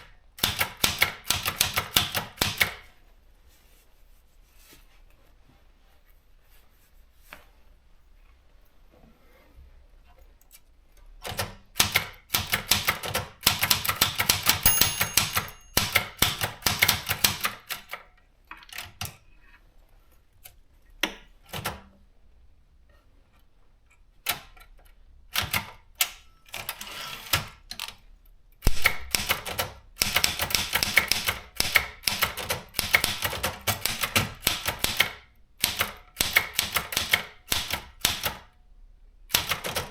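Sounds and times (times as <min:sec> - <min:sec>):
typewriter typing: 0:00.4 - 0:02.8, 0:11.2 - 0:18.0, 0:28.8 - 0:38.5, 0:39.3 - 0:39.9.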